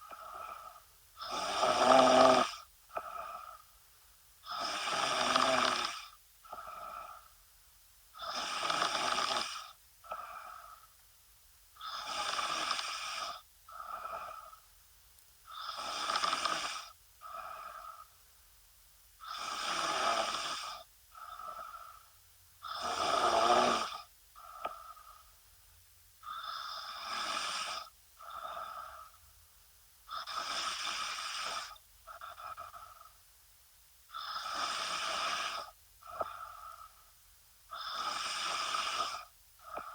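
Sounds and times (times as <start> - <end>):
woman snoring: 0.0 - 3.6, 4.5 - 7.3, 8.2 - 10.9, 11.8 - 14.6, 15.5 - 18.1, 19.2 - 22.0, 22.6 - 25.2, 26.2 - 29.2, 30.1 - 33.0, 34.1 - 37.0, 37.7 - 39.9.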